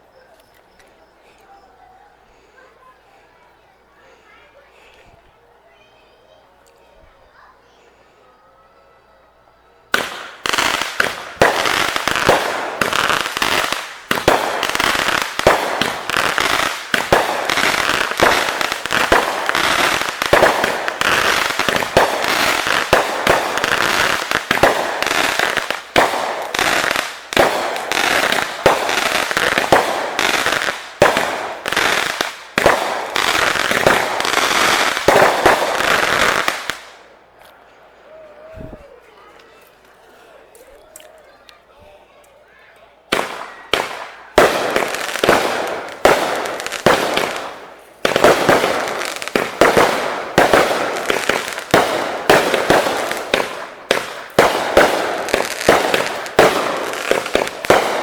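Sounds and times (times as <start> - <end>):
fireworks bangs and crackle: 9.9 - 37.1, 43.1 - 58.0.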